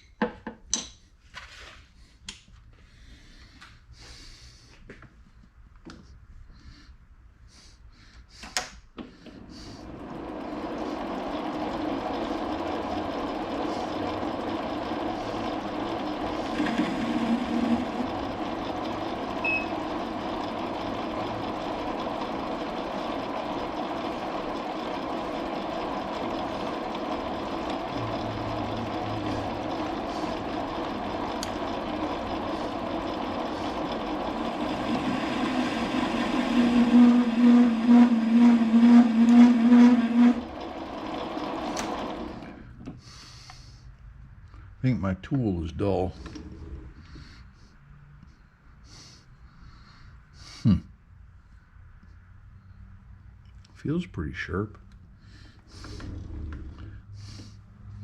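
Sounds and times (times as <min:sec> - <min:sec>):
metal lathe cutting: 0:09.6 - 0:42.5.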